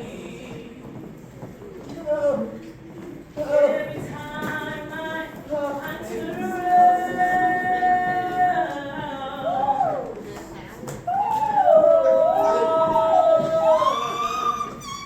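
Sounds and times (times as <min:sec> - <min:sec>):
woman singing a church song: 0:03.4 - 0:10.2, 0:11.1 - 0:15.0.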